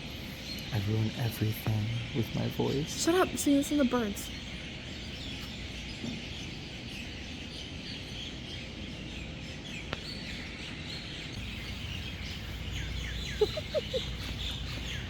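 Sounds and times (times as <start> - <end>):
birds chirping and twittering: 0.0 - 15.0
low background hum: 0.0 - 15.0.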